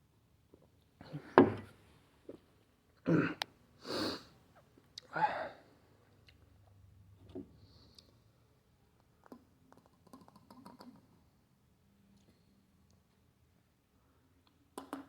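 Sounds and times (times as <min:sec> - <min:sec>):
person breathing and sniffing: 0:03.8 - 0:04.3.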